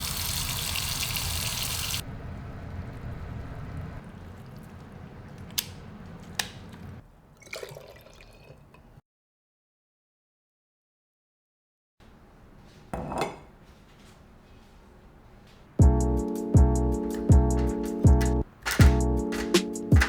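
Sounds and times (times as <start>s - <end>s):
water running from tap: 0.0s - 2.0s, 2.6s - 8.6s
sharp knocks: 17.0s - 20.0s.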